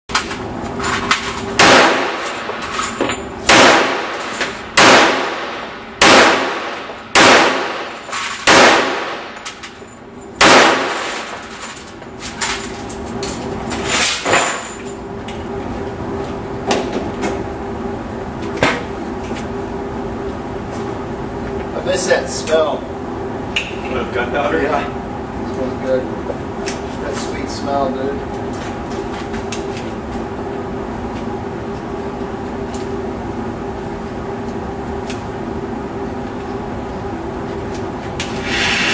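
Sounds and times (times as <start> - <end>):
pistol shots ringing: 1.6 - 2.5, 3.4 - 9.4, 10.4 - 11.4.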